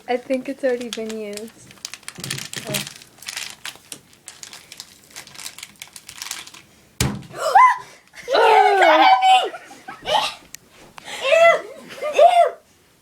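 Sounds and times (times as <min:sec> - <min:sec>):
plastic packet crinkling: 0:00.1 - 0:06.8
loud thump: 0:07.0 - 0:07.4.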